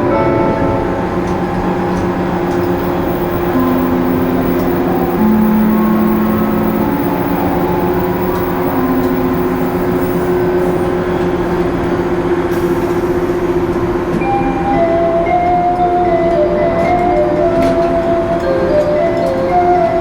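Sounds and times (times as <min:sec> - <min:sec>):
announcement chime melody: 0:00.0 - 0:11.9
electric train running hum: 0:00.0 - 0:20.0.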